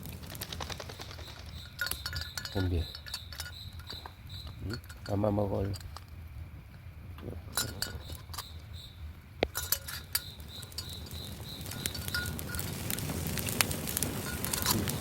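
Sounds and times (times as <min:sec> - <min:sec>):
crickets chirping: 0:00.0 - 0:15.0
sharp clicks and clinks: 0:01.0 - 0:06.1, 0:07.5 - 0:08.7, 0:09.4 - 0:12.8.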